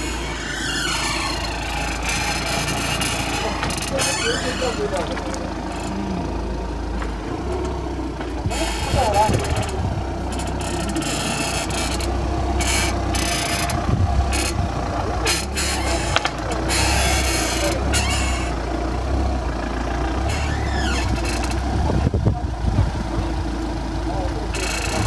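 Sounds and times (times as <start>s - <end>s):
short squeal: 0.0s - 5.1s, 15.2s - 18.6s, 20.3s - 21.6s, 24.6s - 25.0s
car engine idling hum: 0.0s - 25.0s
steering creaking and scraping: 0.0s - 25.0s.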